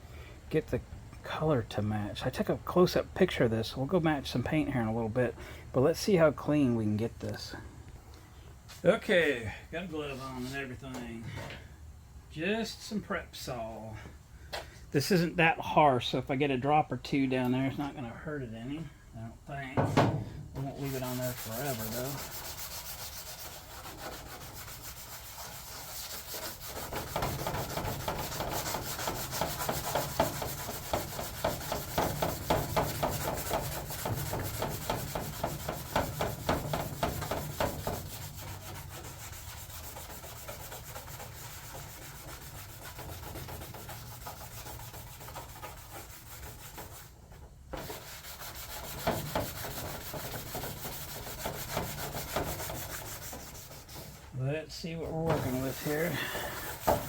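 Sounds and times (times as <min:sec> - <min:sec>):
hand rubbing metal panel: 0:19.8 - 0:54.3, 0:55.0 - 0:57.0.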